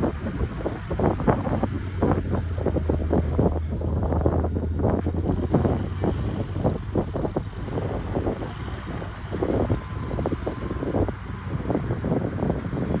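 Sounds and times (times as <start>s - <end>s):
excavator diesel engines: 0.0s - 13.0s.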